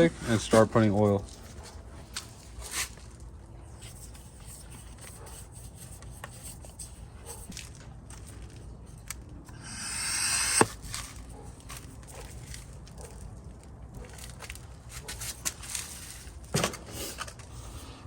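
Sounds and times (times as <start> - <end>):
sharp click: 9.5 - 10.7
rising hiss: 9.5 - 10.8.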